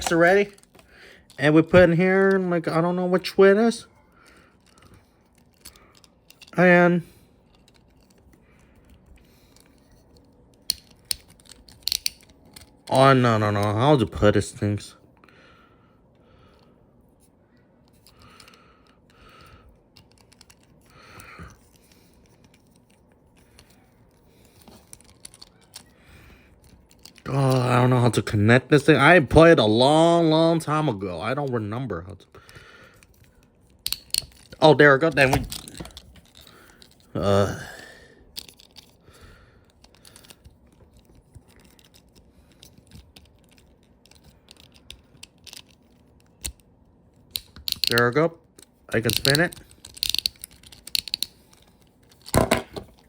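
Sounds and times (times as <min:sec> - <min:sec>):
plastic toy parts clicking: 0:04.6 - 0:06.6, 0:07.5 - 0:12.9, 0:19.4 - 0:25.9, 0:26.5 - 0:27.6, 0:33.0 - 0:37.1, 0:38.3 - 0:39.0, 0:39.6 - 0:46.6, 0:47.2 - 0:53.0.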